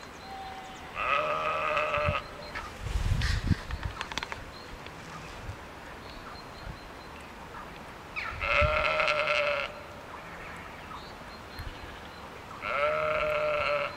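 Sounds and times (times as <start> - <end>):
sheep bleating: 0.9 - 2.3, 8.4 - 9.8, 12.6 - 13.9.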